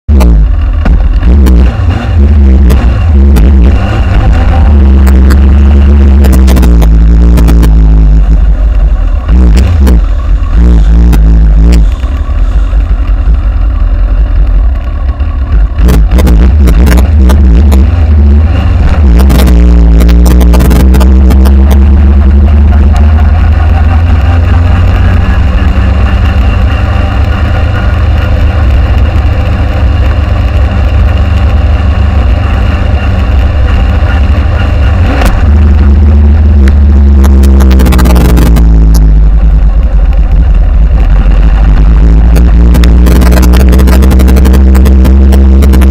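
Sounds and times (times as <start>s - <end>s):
motorcycle engine revving: 0.0s - 45.9s.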